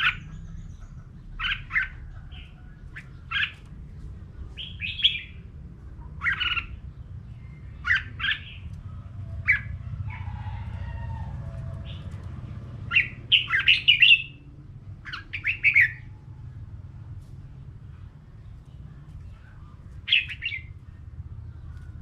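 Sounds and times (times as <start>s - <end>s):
bird singing bright phrases: 0.0s - 3.7s, 4.5s - 5.5s, 12.9s - 16.1s, 18.4s - 21.9s
low steady hum: 0.0s - 22.0s.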